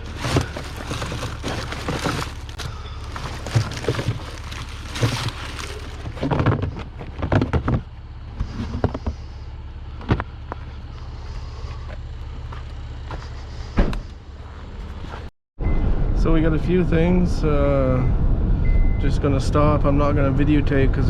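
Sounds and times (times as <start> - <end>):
knocks and clunks: 0.0 - 9.2
car engine humming: 0.0 - 15.3.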